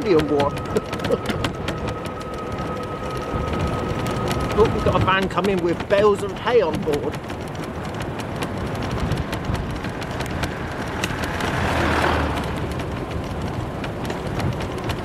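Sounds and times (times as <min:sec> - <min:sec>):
van driving past: 0:07.2 - 0:15.0.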